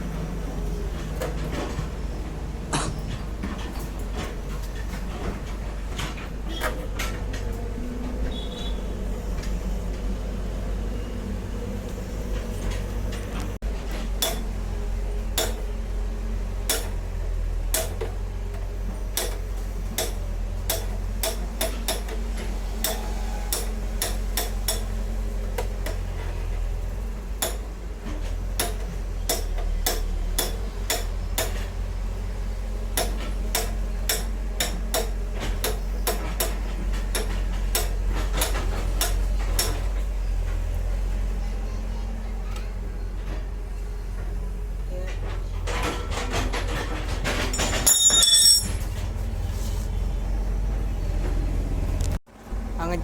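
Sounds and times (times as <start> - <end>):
hand tools clicking on metal: 47.5 - 48.9.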